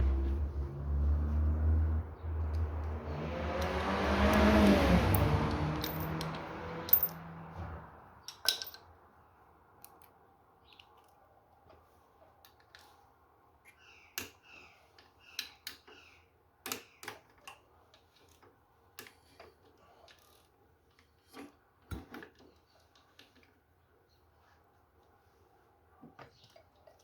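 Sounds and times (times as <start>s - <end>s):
tools and metal parts clinking: 4.3s - 7.2s, 8.3s - 8.9s.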